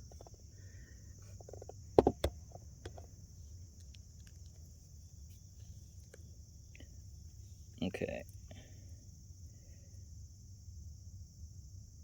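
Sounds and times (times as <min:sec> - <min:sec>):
sharp knocks: 0:02.0 - 0:02.3.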